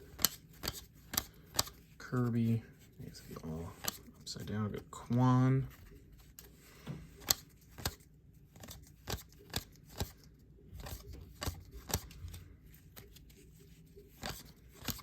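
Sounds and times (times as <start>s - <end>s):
cards snapping and sliding: 0.2s - 1.8s, 7.1s - 10.2s, 10.8s - 13.4s, 14.1s - 15.0s.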